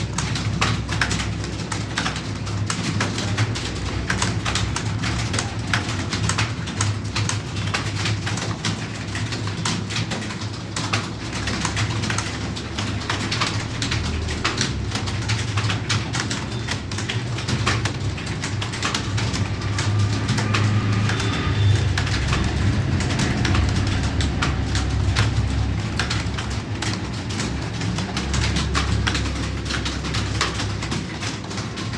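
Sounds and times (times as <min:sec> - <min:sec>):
keyboard typing: 0:00.0 - 0:31.9
low pulsing hum: 0:18.2 - 0:26.8.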